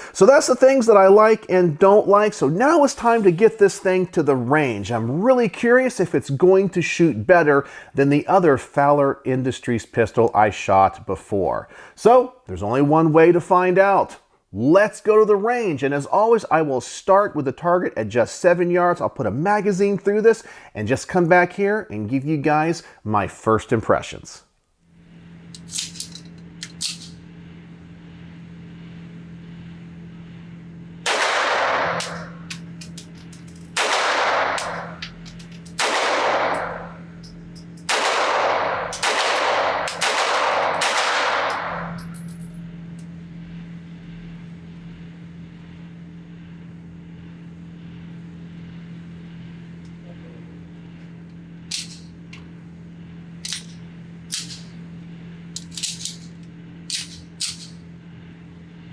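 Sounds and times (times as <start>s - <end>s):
steady low hum: 0.0s - 58.9s
pistol shots with echo: 31.1s - 32.2s, 33.8s - 34.8s, 35.8s - 36.8s, 37.9s - 41.9s.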